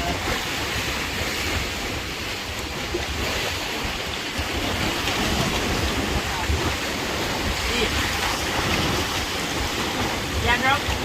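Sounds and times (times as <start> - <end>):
sea surf washing on beach: 0.0 - 11.0
wind buffeting microphone: 0.0 - 11.0.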